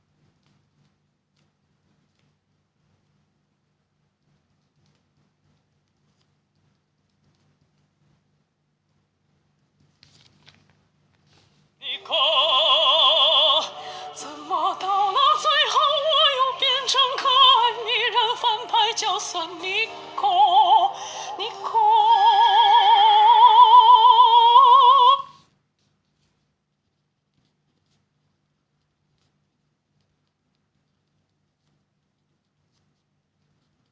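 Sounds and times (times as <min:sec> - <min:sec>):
operatic wordless singing: 0:11.8 - 0:25.3.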